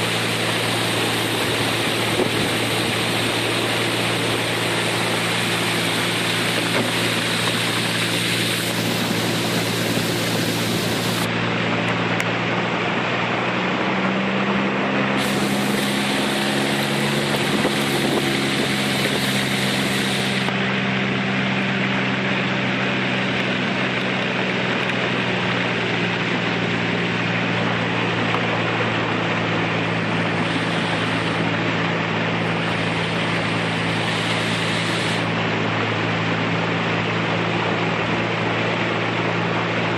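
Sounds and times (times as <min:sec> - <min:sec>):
boat motor running: 0:00.0 - 0:39.9
wind and water rushing: 0:00.0 - 0:39.9.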